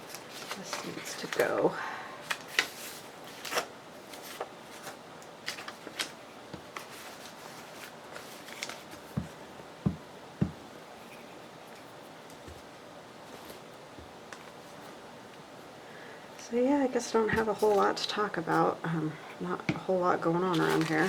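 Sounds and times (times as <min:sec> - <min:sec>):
paper rustling: 0:00.0 - 0:09.7, 0:10.9 - 0:15.0, 0:17.3 - 0:18.2, 0:20.4 - 0:21.0
soft thumps on a table: 0:09.2 - 0:10.6.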